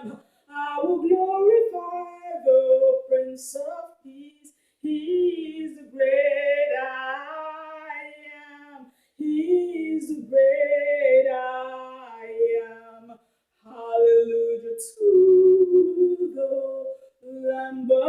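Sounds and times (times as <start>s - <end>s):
woman singing unaccompanied: 0.0s - 18.0s.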